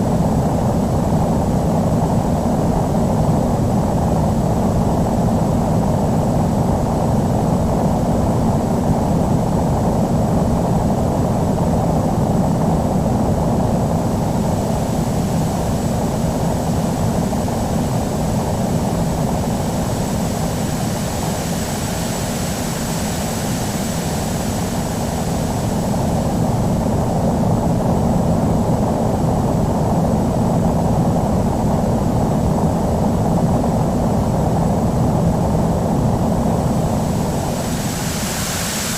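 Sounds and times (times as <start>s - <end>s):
high jet whine: 13.2s - 27.2s, 35.4s - 38.9s
jet rumble: 34.7s - 38.9s
high hiss: 36.7s - 38.9s.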